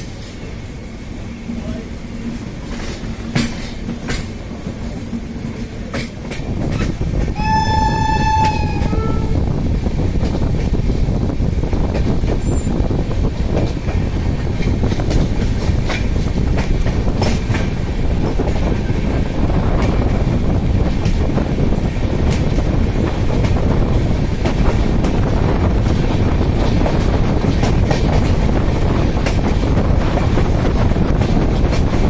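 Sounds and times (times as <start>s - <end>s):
train rumble: 0.0s - 32.0s
wheels clacking over rail joints: 2.3s - 9.1s, 20.8s - 32.0s
shrill locomotive horn: 7.4s - 9.5s.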